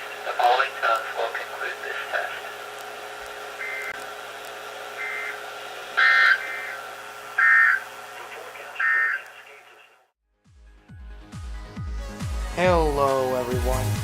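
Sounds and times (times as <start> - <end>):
warbling digital data bursts: 3.6 - 4.0, 5.0 - 5.4, 6.0 - 6.8.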